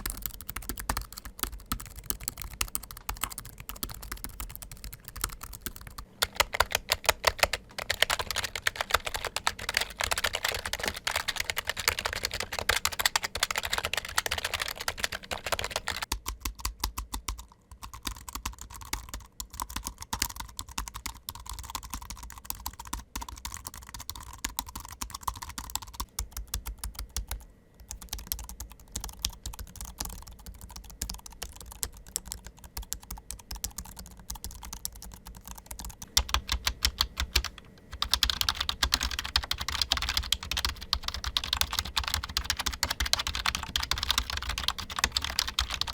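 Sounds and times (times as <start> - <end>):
fast typing on keyboards: 0.0 - 45.9.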